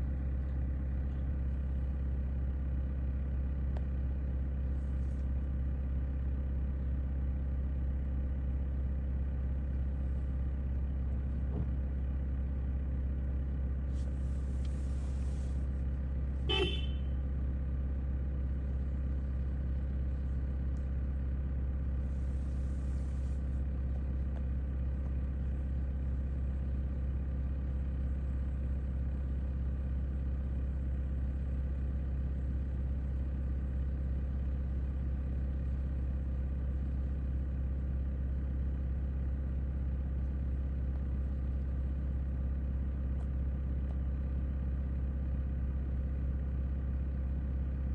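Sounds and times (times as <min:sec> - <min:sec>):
car engine humming: 0:00.0 - 0:38.6
short high toot: 0:16.5 - 0:17.1.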